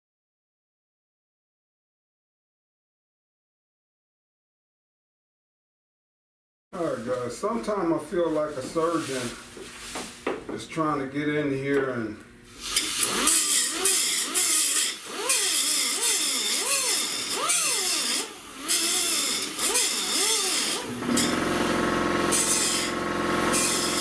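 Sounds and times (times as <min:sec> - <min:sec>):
power tool on metal: 0:12.5 - 0:24.0.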